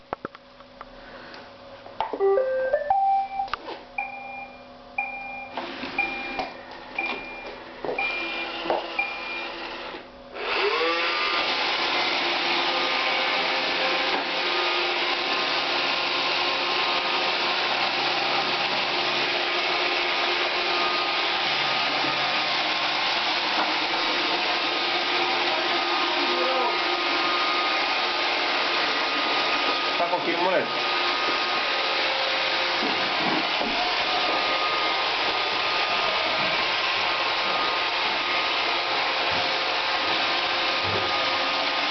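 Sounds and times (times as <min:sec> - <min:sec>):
robot vacuum two-note beeps: 0:02.2 - 0:06.4, 0:07.0 - 0:09.5
vacuum motors whining: 0:05.0 - 0:41.9.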